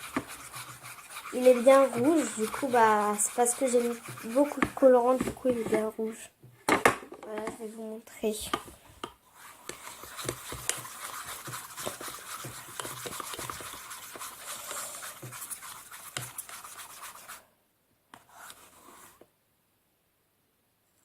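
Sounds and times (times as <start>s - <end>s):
utensil stirring and scraping slime: 0.0s - 6.2s, 9.2s - 17.4s.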